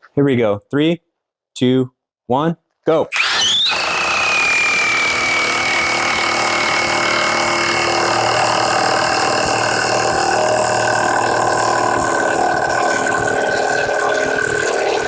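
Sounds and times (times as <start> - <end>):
impact wrench hammering: 3.8 - 15.0.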